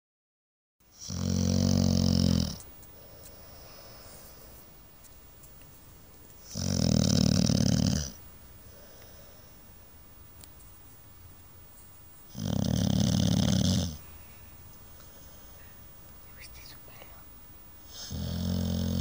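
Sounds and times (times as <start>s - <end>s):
dog snoring: 0.9s - 2.6s, 6.4s - 9.6s, 12.3s - 14.0s, 17.8s - 19.0s.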